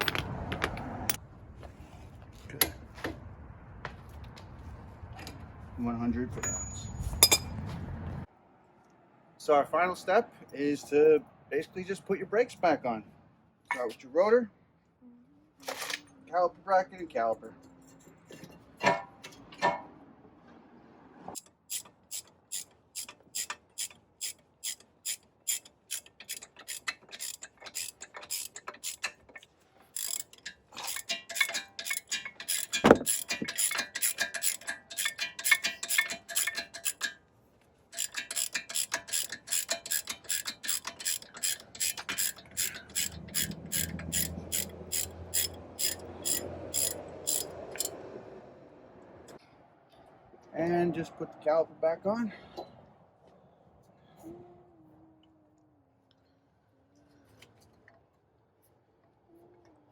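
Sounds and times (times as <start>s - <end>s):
ratchet wrench clicking: 21.4s - 37.2s, 37.9s - 48.0s.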